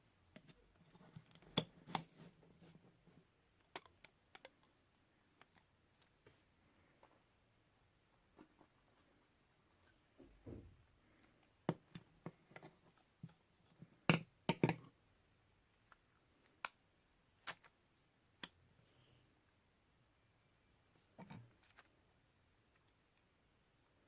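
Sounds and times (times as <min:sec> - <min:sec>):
small objects clicking and tapping: 0:14.1 - 0:14.9.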